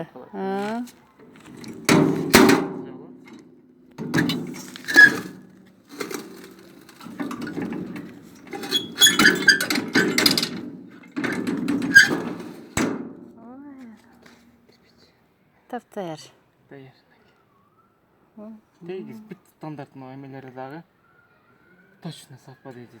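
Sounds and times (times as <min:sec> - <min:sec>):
metal press clanks and thuds: 0:00.6 - 0:13.3.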